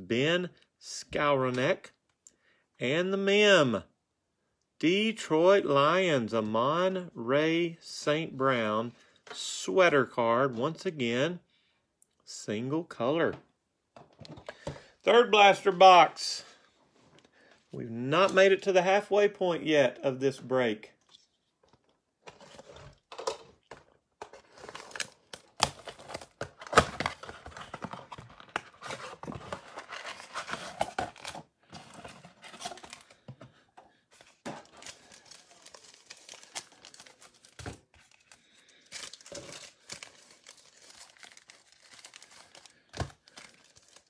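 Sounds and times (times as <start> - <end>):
cardboard rustling: 22.2 - 44.0
plastic wrappers crinkling and tearing: 34.6 - 44.0.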